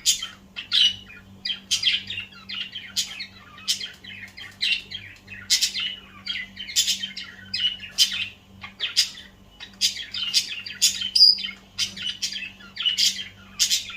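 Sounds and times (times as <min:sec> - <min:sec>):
budgerigar chattering: 0:04.6 - 0:13.9.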